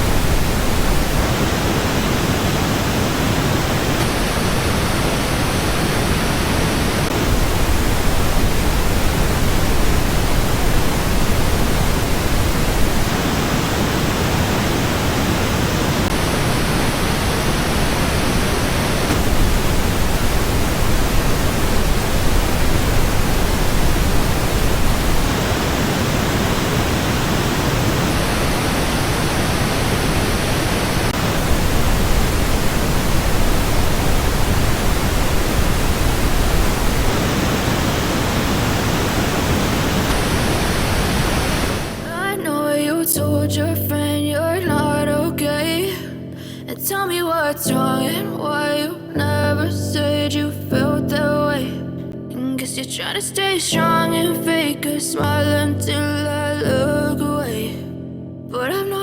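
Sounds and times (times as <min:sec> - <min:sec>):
pink noise test signal: 0:00.0 - 0:42.8.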